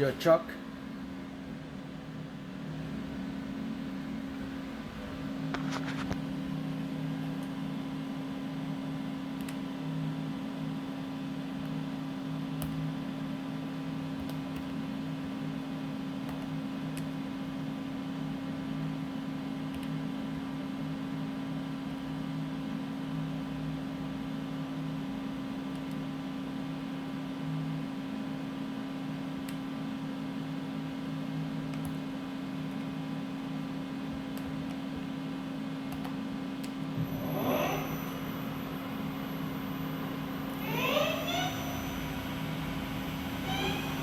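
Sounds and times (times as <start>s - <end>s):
machine hum: 30.4s - 44.0s
short rising sound: 37.0s - 44.0s.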